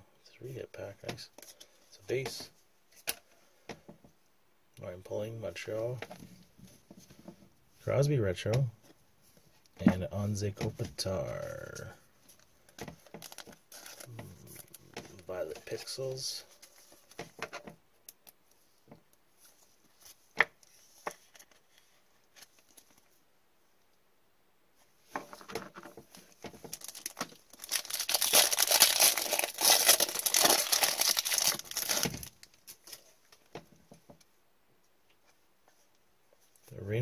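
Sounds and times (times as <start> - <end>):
wrapper tearing and crinkling: 26.7 - 33.0.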